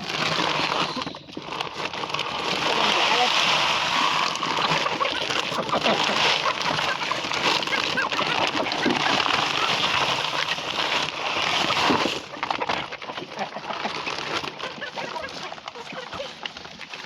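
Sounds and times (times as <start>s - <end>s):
poultry pecking wet mash: 0.0s - 17.0s.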